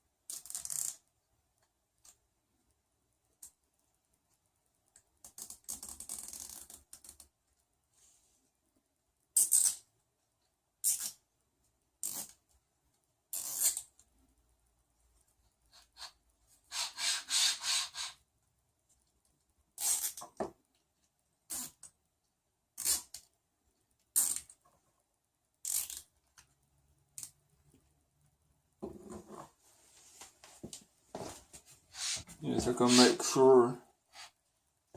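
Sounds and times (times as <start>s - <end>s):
zip ties being pulled: 0.3s - 1.0s, 5.4s - 7.2s, 12.0s - 12.4s, 13.3s - 13.9s, 21.5s - 21.9s, 24.2s - 24.6s, 25.6s - 26.1s.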